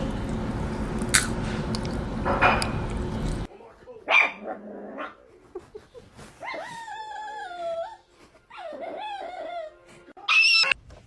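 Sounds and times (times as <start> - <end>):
dog whining: 6.4 - 10.8.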